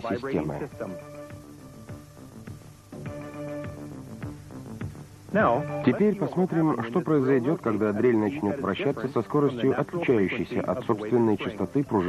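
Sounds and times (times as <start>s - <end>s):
sustained music chords: 0.6s - 6.2s.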